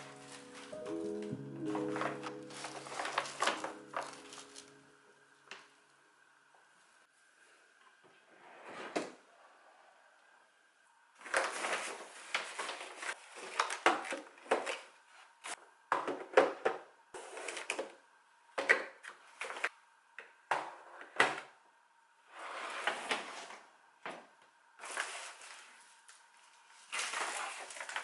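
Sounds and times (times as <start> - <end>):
objects being handled: 0.0 - 4.8
faint steady hum: 0.0 - 28.0.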